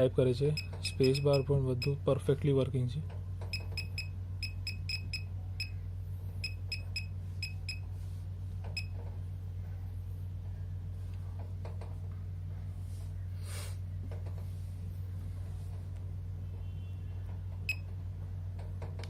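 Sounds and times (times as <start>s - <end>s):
steady low hum: 0.0s - 19.0s
short electronic beeps: 0.5s - 2.0s, 3.5s - 5.8s, 6.4s - 7.9s.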